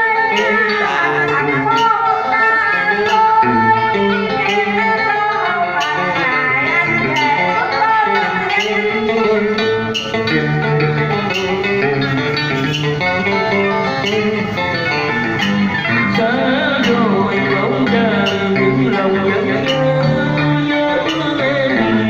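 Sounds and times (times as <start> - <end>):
plucked guitar: 0.0 - 22.0
steady bass: 3.4 - 4.0.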